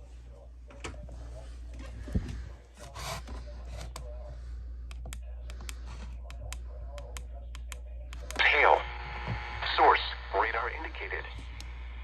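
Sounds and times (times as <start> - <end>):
steady low hum: 0.0 - 12.0
irregular light clicks: 4.9 - 8.4.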